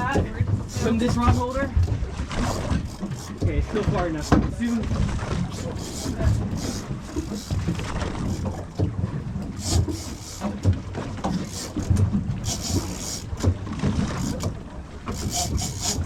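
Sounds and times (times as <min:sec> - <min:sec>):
boat engine humming: 0:00.0 - 0:16.0.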